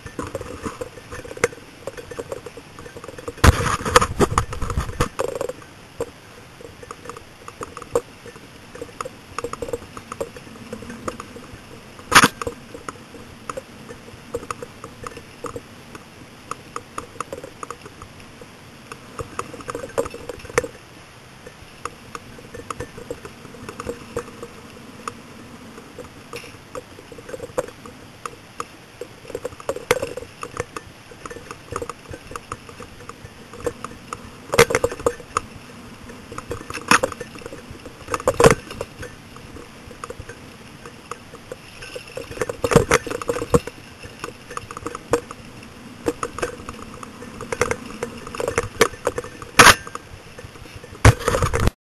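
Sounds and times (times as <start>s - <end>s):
mountain bike rattling: 0.0s - 51.8s.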